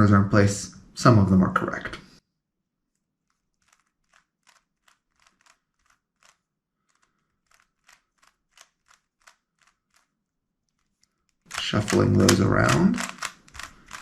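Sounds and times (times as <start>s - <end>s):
puzzle cube plastic clicks: 2.9s - 14.0s.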